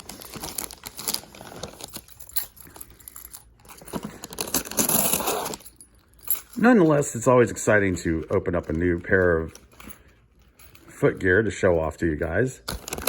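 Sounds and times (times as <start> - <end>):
packaging crinkling and tearing: 0.0 - 3.1, 3.7 - 5.7, 12.7 - 13.0.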